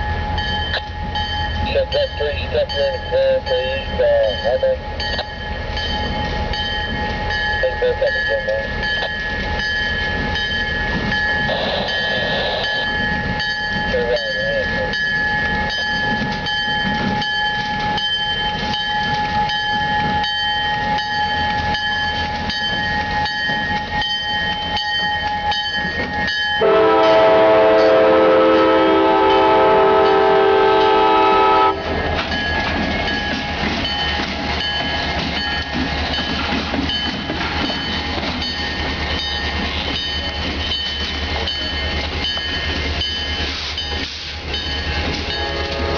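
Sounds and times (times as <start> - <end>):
locomotive air horn blast: 26.6 - 31.9, 45.4 - 45.9.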